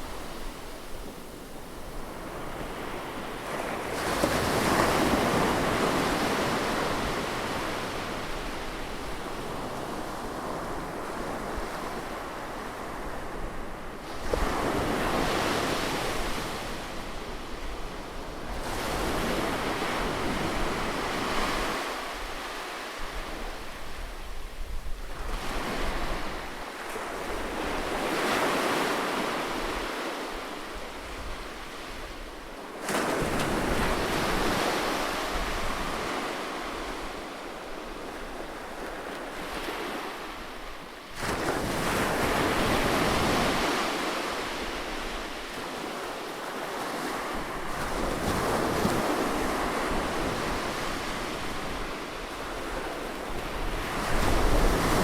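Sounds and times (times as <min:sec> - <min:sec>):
waves breaking on a beach: 0:00.0 - 0:55.0.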